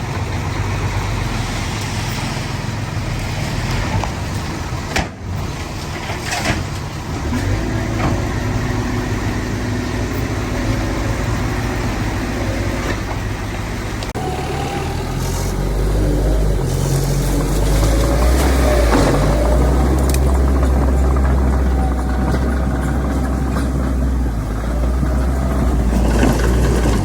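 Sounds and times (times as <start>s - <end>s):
diesel machinery engines droning: 0.0s - 27.0s.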